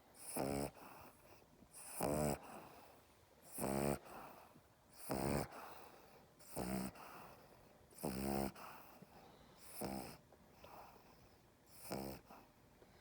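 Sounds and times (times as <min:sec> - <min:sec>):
dog snorting: 0:00.2 - 0:02.9, 0:03.5 - 0:04.4, 0:05.0 - 0:07.4, 0:08.0 - 0:09.0, 0:09.6 - 0:11.0, 0:11.7 - 0:12.5.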